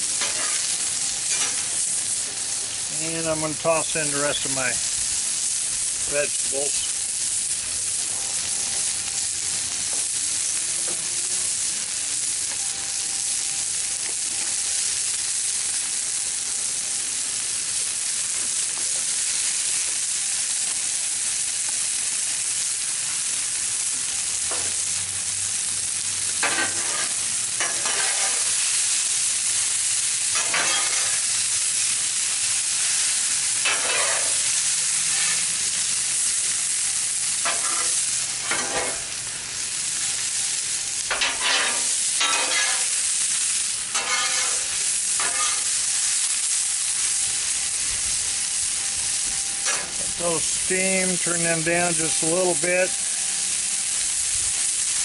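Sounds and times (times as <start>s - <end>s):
vegetables sizzling on griddle: 0.0s - 55.0s
spatula scraping steel: 26.4s - 28.4s, 33.6s - 34.4s, 43.9s - 45.7s.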